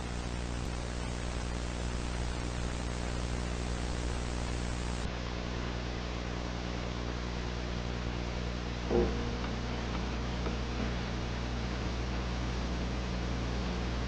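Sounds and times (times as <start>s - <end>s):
static hiss: 0.0s - 5.1s
low buzzing hum: 0.0s - 14.0s.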